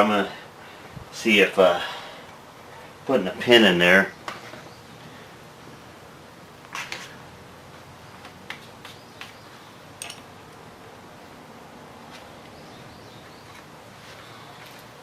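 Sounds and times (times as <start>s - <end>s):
low background hiss: 0.0s - 15.0s.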